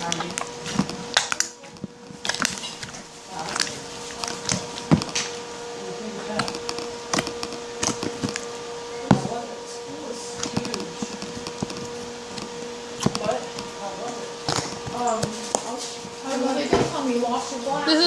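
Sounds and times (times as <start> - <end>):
slime clicking and popping: 0.0 - 5.3, 6.4 - 8.5.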